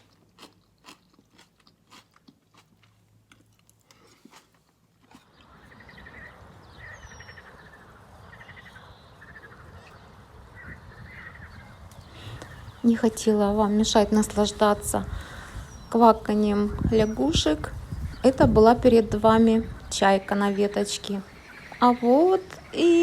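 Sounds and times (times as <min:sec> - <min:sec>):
chewing and crunching food: 0:00.0 - 0:06.3
steady outdoor hiss: 0:04.7 - 0:23.0
frogs croaking: 0:05.3 - 0:14.5, 0:19.4 - 0:23.0.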